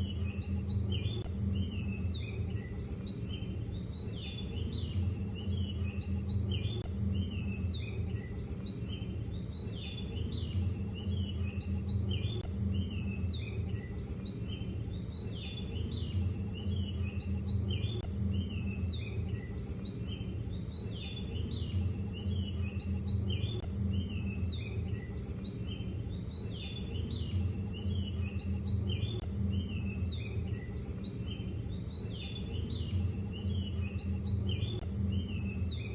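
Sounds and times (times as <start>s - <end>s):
small birds chirping: 0.0s - 35.9s
steady low hum: 0.0s - 35.9s.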